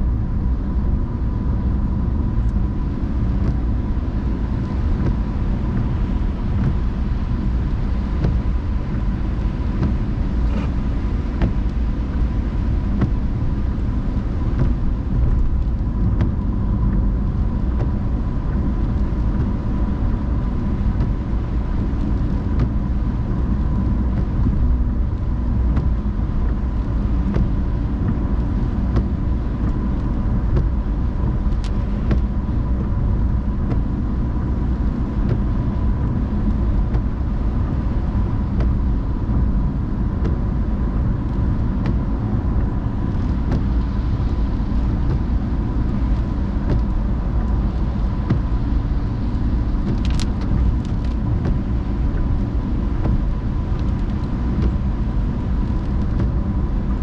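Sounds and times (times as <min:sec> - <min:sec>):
car engine and tyres rumbling: 0:00.0 - 0:57.0
light ticks: 0:31.5 - 0:32.3, 0:49.8 - 0:51.6.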